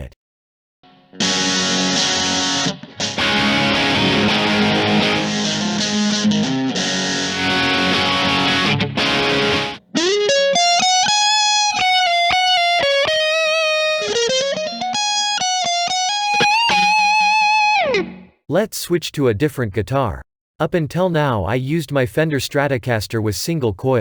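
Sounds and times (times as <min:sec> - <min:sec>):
electric guitar lead line: 0:00.9 - 0:18.4
distorted electric guitar chugging: 0:01.2 - 0:18.3.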